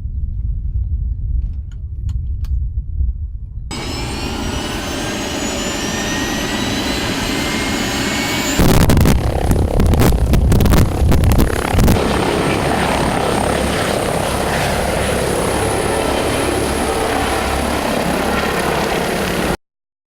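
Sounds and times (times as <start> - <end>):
helicopter rotor and engine drone: 3.7 - 19.6
high steady whine: 3.7 - 19.6.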